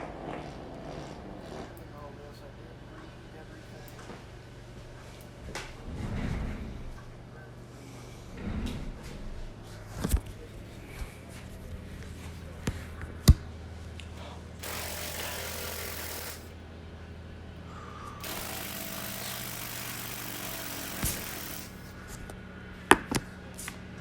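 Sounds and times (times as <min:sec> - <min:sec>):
power tool rushing noise: 0:14.6 - 0:16.6, 0:18.2 - 0:22.2.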